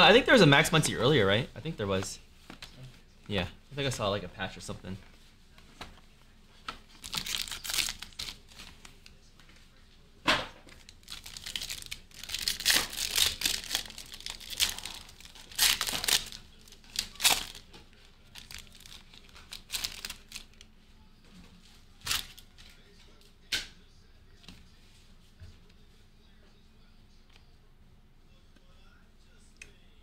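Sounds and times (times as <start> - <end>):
packaging torn and crinkled: 7.0 - 8.6, 10.8 - 17.7, 18.3 - 20.5, 22.1 - 22.4.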